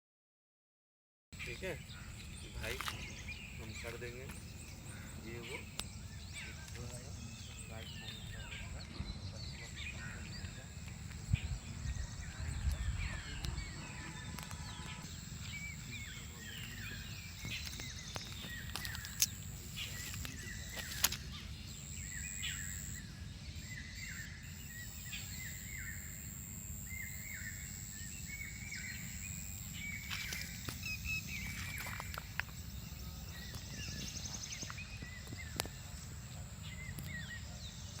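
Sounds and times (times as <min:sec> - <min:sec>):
birds chirping: 0:01.4 - 0:38.0
sharp clicks: 0:15.5 - 0:21.3.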